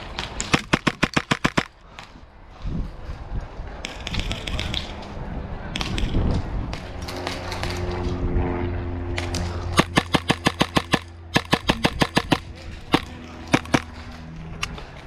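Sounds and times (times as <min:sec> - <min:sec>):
airsoft guns firing: 0:00.1 - 0:01.7, 0:09.2 - 0:14.0.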